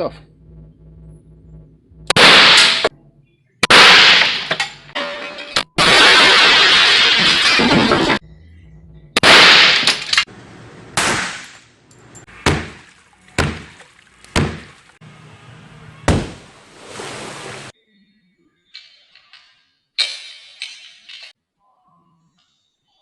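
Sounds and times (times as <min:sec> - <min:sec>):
sharp bangs with shattering: 0:02.1 - 0:02.9, 0:03.6 - 0:08.2, 0:09.2 - 0:10.3, 0:11.0 - 0:11.6.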